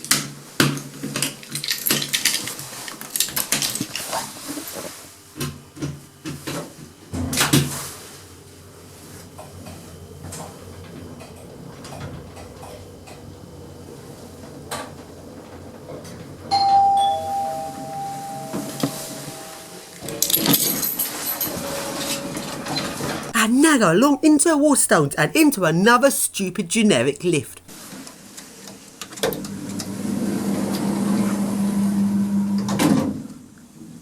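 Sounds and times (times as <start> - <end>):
electronic two-tone arrival chime: 16.5 - 20.0.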